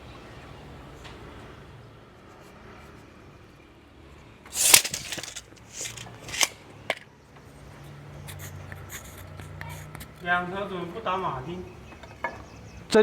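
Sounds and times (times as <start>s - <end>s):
loud sharp clatter: 4.5s - 7.0s.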